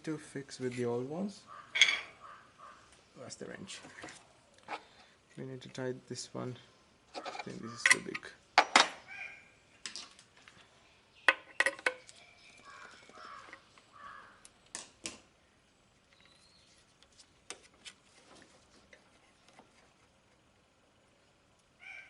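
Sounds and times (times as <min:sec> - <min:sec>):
metal tools clinking: 0:01.8 - 0:02.1.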